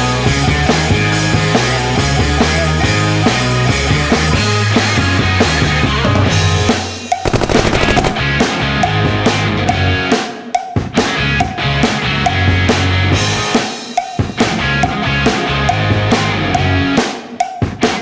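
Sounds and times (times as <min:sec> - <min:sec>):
rapid drum roll: 0:07.3 - 0:08.2.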